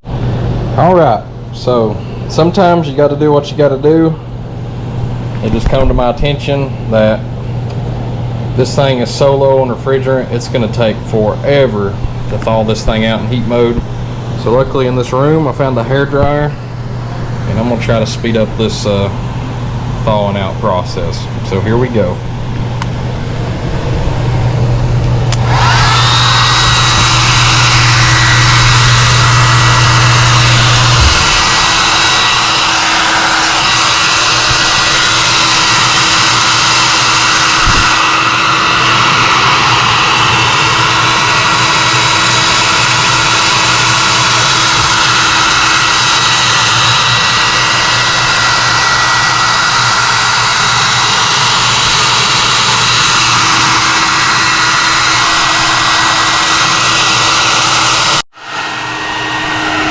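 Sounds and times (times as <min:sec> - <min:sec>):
steady low hum: 0:00.0 - 0:59.9
hair dryer motor whine: 0:07.7 - 0:59.9
rush of blowing air: 0:22.2 - 0:59.9.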